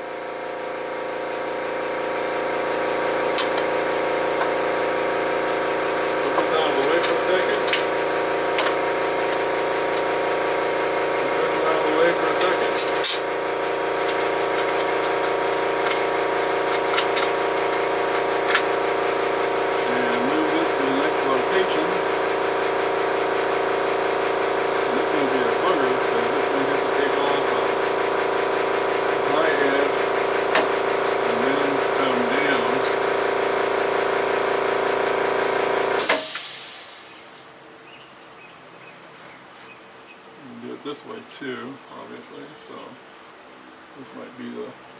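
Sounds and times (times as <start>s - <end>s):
electric motor humming: 0.0s - 36.3s
shop vacuum running: 0.0s - 37.5s.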